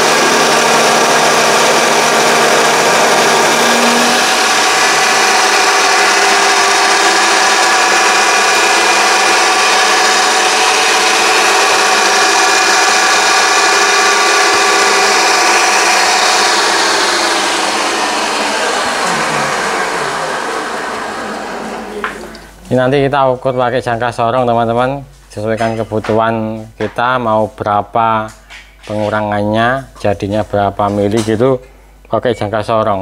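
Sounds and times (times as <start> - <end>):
lathe motor whining: 0.0 - 22.7.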